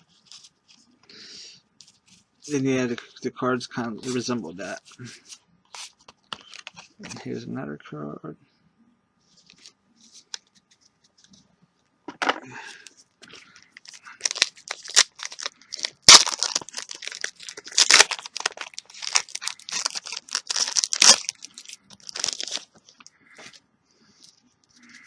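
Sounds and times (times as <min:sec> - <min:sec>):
wrapper tearing and crinkling: 0:13.8 - 0:23.0.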